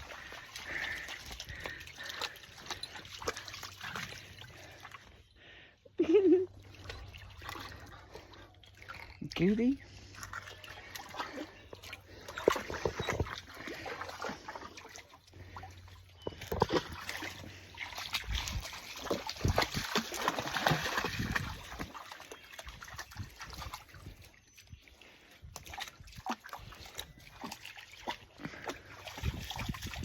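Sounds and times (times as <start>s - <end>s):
creek water splashing: 0.0s - 30.0s.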